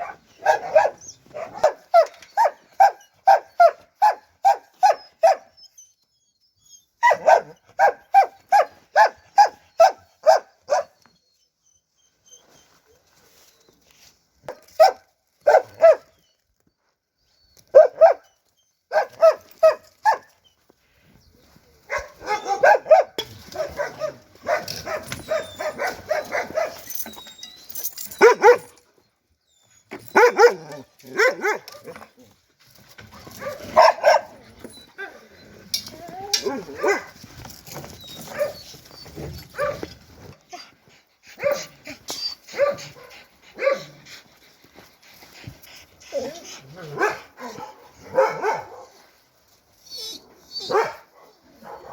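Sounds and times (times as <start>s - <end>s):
dogs barking: 0.0s - 5.5s, 7.0s - 10.9s, 18.9s - 20.3s, 21.9s - 26.8s, 28.2s - 28.7s, 30.2s - 32.0s, 33.3s - 34.4s, 36.5s - 37.1s, 41.4s - 41.7s, 42.5s - 44.0s, 46.8s - 49.0s, 50.6s - 51.9s.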